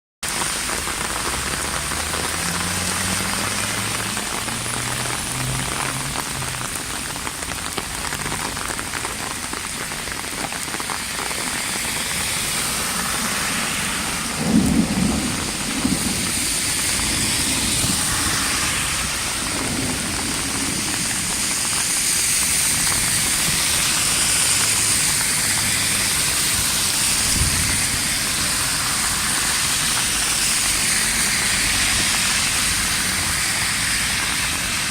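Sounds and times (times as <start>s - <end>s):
heavy rain hissing: 0.2s - 34.9s
thunder: 14.0s - 21.7s, 27.2s - 28.0s.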